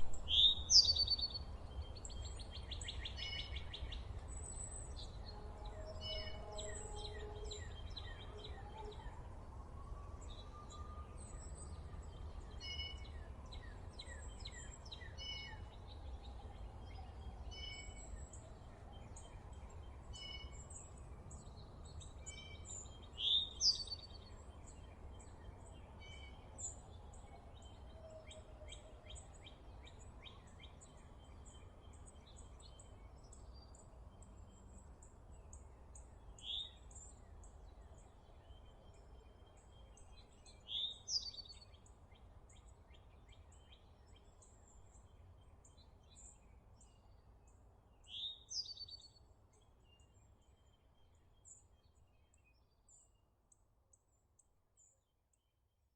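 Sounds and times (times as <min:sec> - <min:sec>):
steady low rumble: 0:00.0 - 0:00.7.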